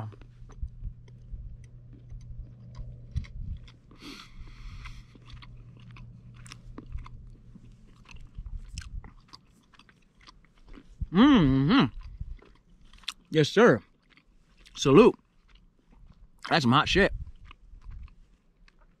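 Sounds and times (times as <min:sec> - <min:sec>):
chewing chocolate: 0:00.0 - 0:19.0
short breath: 0:04.0 - 0:05.2.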